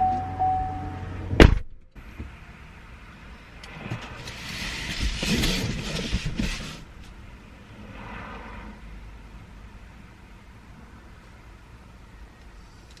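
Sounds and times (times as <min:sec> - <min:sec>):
car warning chime: 0:00.0 - 0:01.2
car door shutting: 0:01.3 - 0:02.4.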